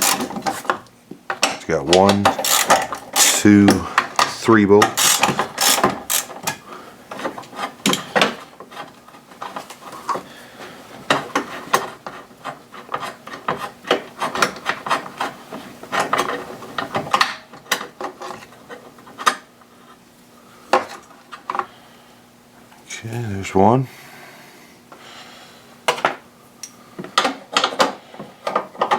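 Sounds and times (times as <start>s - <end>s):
ratchet wrench clicking: 0.0s - 0.3s, 2.4s - 3.5s, 5.0s - 6.4s.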